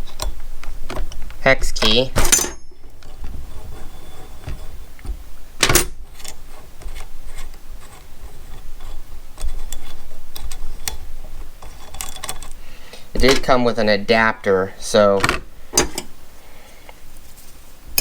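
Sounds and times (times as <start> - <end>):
metal scraping: 2.3 - 12.6.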